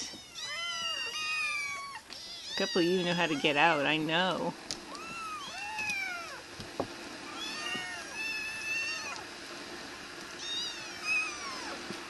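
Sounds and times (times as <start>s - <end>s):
kittens mewing: 0.0s - 3.8s.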